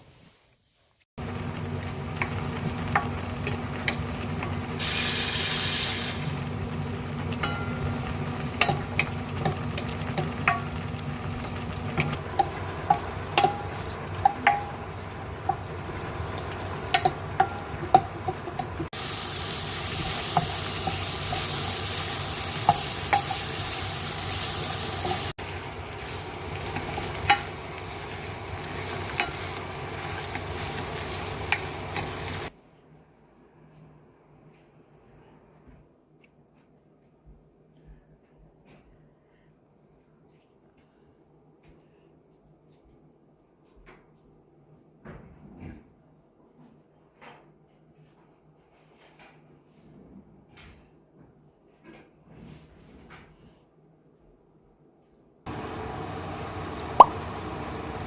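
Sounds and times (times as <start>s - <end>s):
food sizzling in a pan: 0.0s - 32.5s, 55.5s - 58.0s
utensil tapping against pan: 8.6s - 10.8s, 11.9s - 14.8s, 16.9s - 18.8s, 57.0s - 57.2s.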